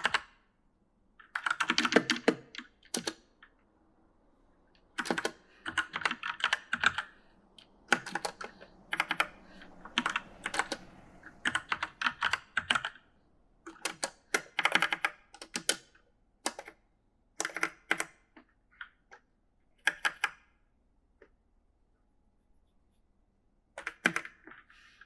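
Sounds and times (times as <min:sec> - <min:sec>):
typing on mechanical keyboard: 0:00.0 - 0:00.5, 0:01.2 - 0:03.5, 0:04.8 - 0:16.8, 0:17.4 - 0:19.2, 0:19.8 - 0:20.6, 0:23.7 - 0:25.0.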